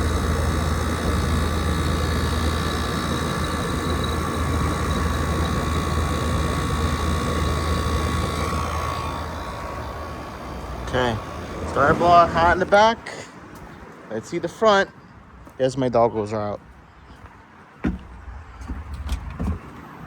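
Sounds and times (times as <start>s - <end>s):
air conditioner running: 0.0s - 13.6s.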